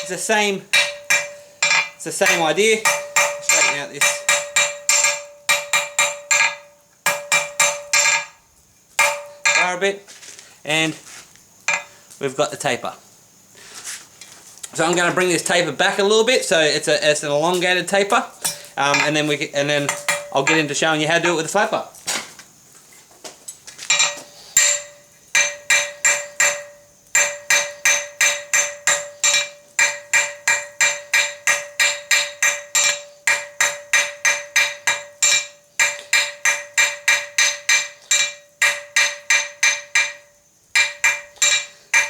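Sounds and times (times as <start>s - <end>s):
anvil ringing: 0.0s - 8.4s, 9.0s - 9.8s, 11.7s - 11.9s, 18.4s - 21.5s, 23.9s - 42.0s
hammer striking metal on anvil: 0.0s - 8.4s, 9.0s - 9.8s, 11.7s - 11.9s, 18.4s - 21.4s, 23.9s - 42.0s.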